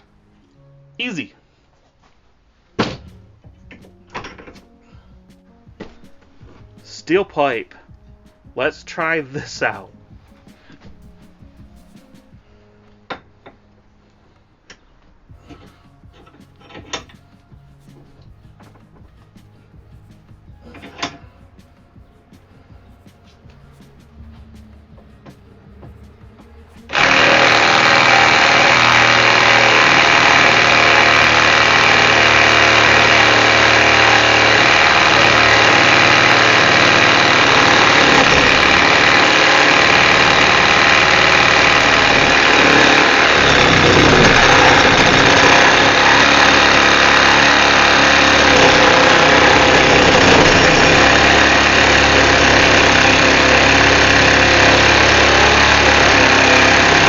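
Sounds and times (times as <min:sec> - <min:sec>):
saw motor drone: 0:25.8 - 0:57.0
saw blade rasping on metal: 0:26.8 - 0:57.0.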